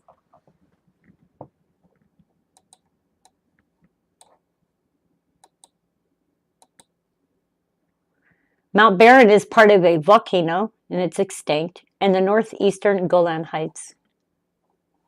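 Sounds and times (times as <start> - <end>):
computer mouse clicks: 2.5 - 4.4, 5.4 - 5.8, 6.6 - 6.9.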